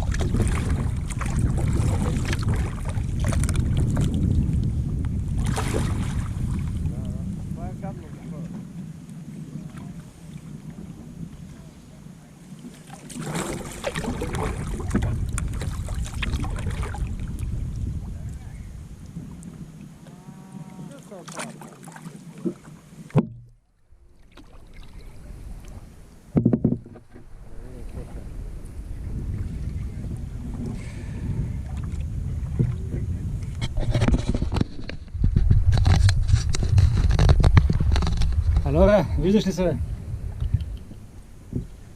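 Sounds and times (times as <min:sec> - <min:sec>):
low rumble: 0:00.0 - 0:08.4, 0:26.8 - 0:41.9
kayak paddle splashing water: 0:00.0 - 0:33.0.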